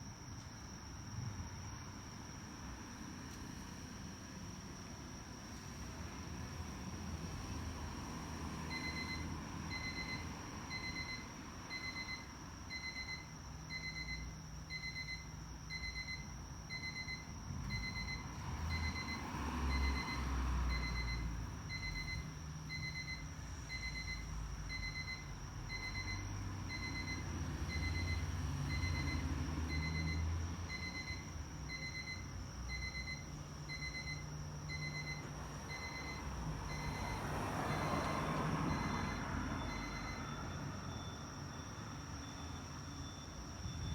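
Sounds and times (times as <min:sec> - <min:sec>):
low traffic rumble: 0:15.5 - 0:43.9.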